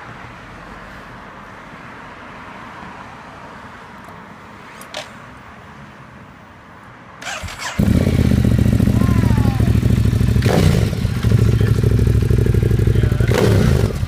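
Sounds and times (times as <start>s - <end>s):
motorcycle starter cranking: 7.2s - 8.3s.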